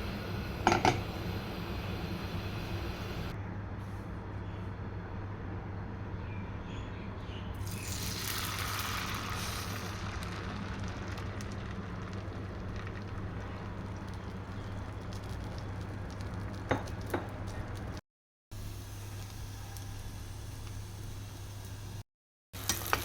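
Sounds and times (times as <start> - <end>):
omelette sizzling in a pan: 7.6 - 18.0, 22.6 - 23.0.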